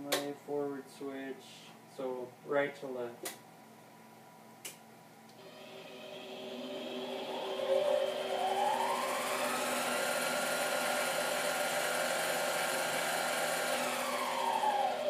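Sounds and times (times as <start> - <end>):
lathe motor whine: 5.4 - 15.0.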